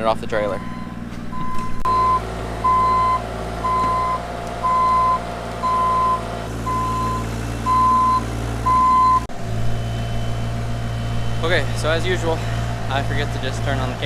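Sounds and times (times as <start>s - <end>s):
diesel engine running: 0.0s - 14.0s
backup alarm beeping: 0.6s - 11.4s.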